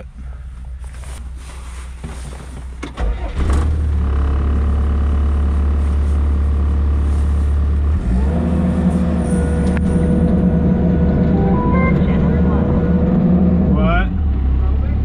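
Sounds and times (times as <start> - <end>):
digging machine engine running: 3.0 - 13.6
rising whine: 8.6 - 13.8.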